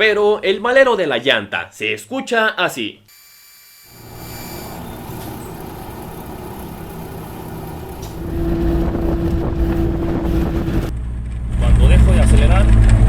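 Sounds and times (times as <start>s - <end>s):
wheel bearing hum: 3.1s - 10.9s
car road noise: 3.9s - 11.5s.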